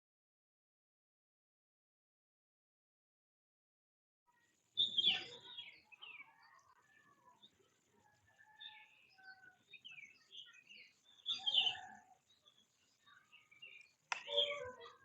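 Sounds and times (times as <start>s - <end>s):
parrots soft chirps and chatter: 4.3s - 15.0s.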